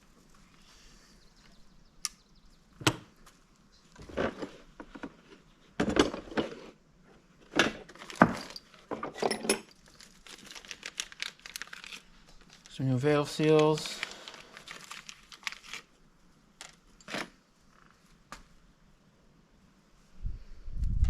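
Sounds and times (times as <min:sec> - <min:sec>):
metal parts clicking and knocking: 0:08.1 - 0:10.1.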